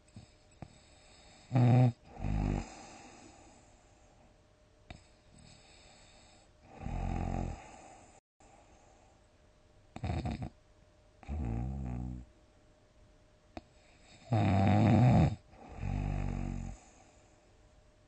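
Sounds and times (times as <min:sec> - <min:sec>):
quiet breathing: 0:00.0 - 0:10.6, 0:13.5 - 0:14.4, 0:15.3 - 0:17.7
person snoring loudly: 0:01.0 - 0:03.4, 0:05.5 - 0:08.0, 0:11.2 - 0:12.2, 0:14.2 - 0:17.0.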